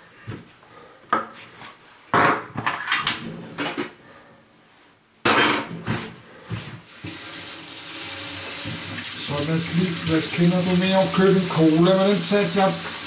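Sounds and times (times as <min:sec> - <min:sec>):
dishes and cutlery clattering: 0:02.2 - 0:03.9, 0:05.3 - 0:06.1.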